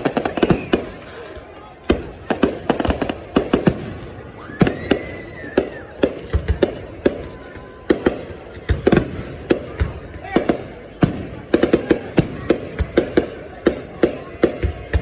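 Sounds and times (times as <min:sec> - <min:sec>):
firework whistle: 0:00.0 - 0:01.3
fireworks bangs and cracks: 0:00.0 - 0:15.0.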